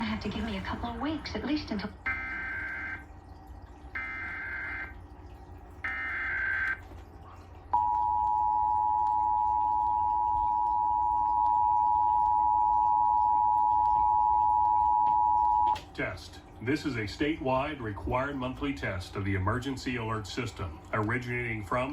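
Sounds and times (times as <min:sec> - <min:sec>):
steady two-tone attention signal: 0:07.8 - 0:15.8.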